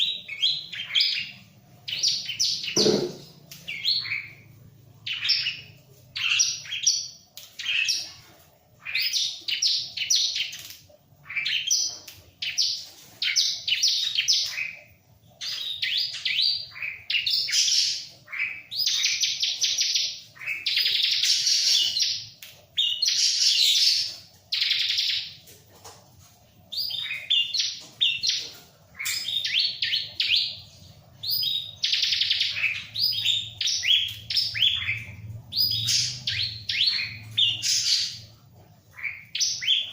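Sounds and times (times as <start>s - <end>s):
bird high chattering song: 0.0s - 8.2s, 26.8s - 39.9s.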